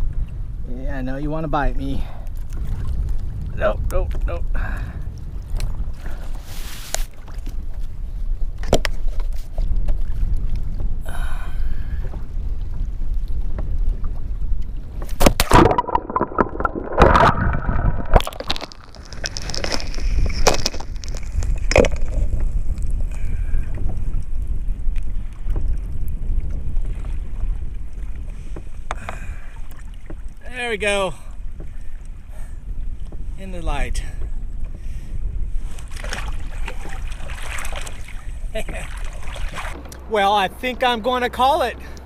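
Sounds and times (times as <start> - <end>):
wind rumble on microphone: 0.0 - 42.0
water sloshing and splashing: 1.9 - 11.0, 11.6 - 42.0.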